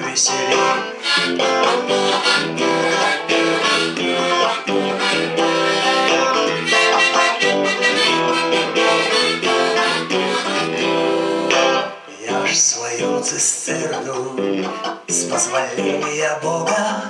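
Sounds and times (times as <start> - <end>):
chordal instrumental accompaniment: 0.4 - 12.1.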